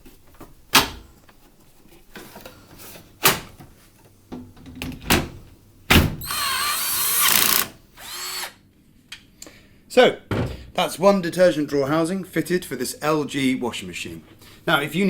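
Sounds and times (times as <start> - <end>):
panels clunking and knocking: 3.2 - 6.2
cordless screwdriver whirring: 6.2 - 8.6.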